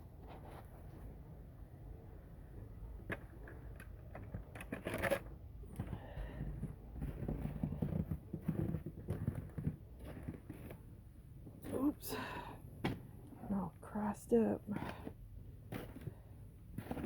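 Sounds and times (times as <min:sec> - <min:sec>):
footsteps: 0:05.7 - 0:10.9, 0:14.7 - 0:17.0.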